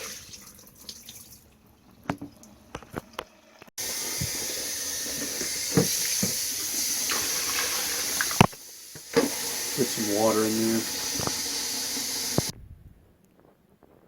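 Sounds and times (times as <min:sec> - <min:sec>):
water running into washer tub: 0:00.0 - 0:12.5.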